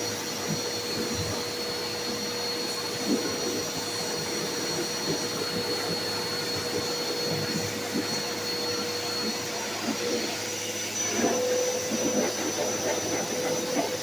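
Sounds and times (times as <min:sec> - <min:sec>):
pressure washer spraying water: 0:00.0 - 0:14.0.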